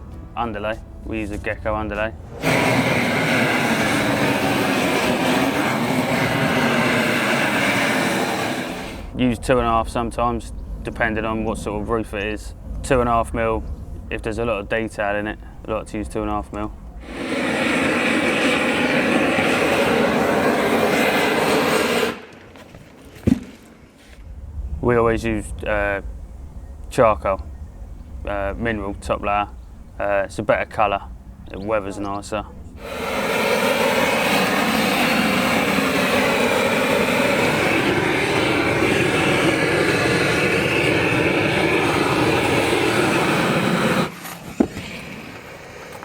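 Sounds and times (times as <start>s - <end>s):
gas torch burning: 1.9s - 22.7s, 32.8s - 46.0s.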